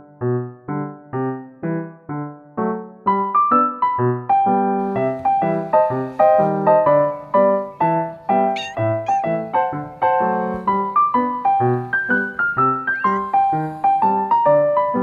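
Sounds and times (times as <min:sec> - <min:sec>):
piano music: 0:00.0 - 0:15.0
kitten mewing: 0:08.6 - 0:09.3.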